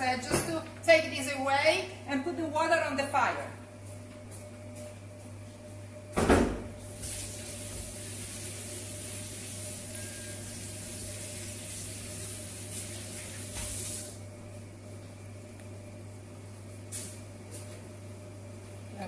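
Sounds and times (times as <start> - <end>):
water running from a tap: 7.0 - 14.2.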